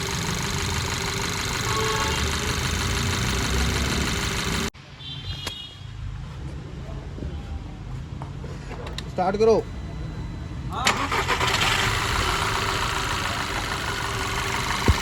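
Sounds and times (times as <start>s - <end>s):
car engine running rough: 0.0s - 4.7s, 9.7s - 15.0s.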